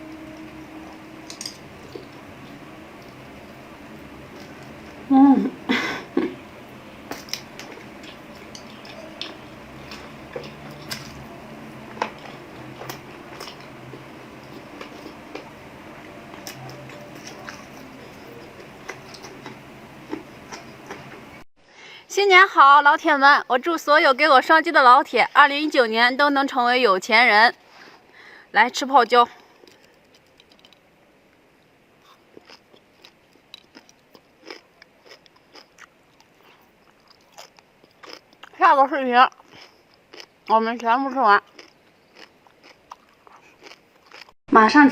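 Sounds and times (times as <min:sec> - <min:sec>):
person chewing crunchy food: 0:06.0 - 0:15.6, 0:16.3 - 0:21.2, 0:32.0 - 0:38.6, 0:39.3 - 0:40.5, 0:41.4 - 0:44.4.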